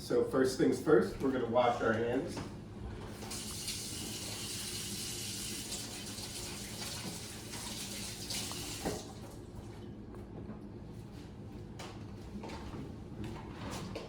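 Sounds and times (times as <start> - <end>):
hands washing: 3.1 - 9.7
tap running into a sink: 3.2 - 9.4.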